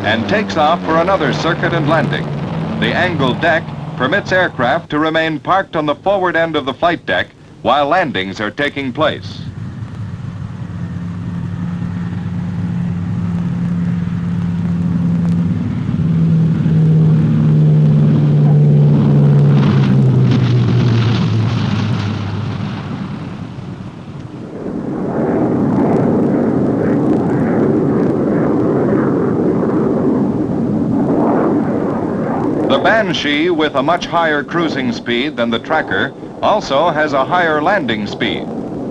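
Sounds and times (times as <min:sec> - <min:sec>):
aircraft engine passing: 0:00.0 - 0:38.9
rushing aircraft engine noise: 0:00.0 - 0:38.9.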